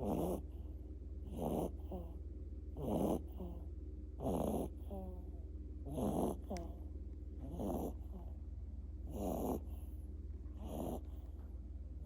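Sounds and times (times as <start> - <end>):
pet snoring: 0.0 - 2.2, 2.8 - 6.8, 7.4 - 8.3, 9.0 - 10.0, 10.6 - 11.4.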